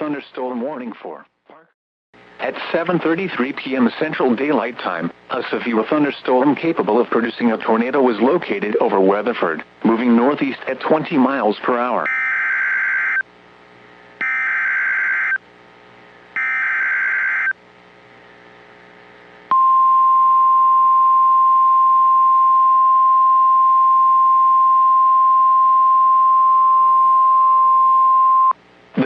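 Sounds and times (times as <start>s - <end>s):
steady warning alarm tone: 12.1s - 13.2s, 14.2s - 15.4s, 16.4s - 17.6s
buzzy digital data tones: 14.2s - 15.4s, 16.4s - 17.6s.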